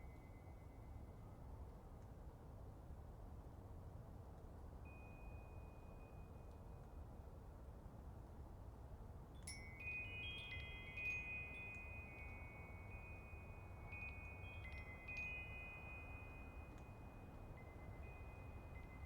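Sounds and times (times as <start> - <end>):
wind chimes ringing: 9.5 - 19.0.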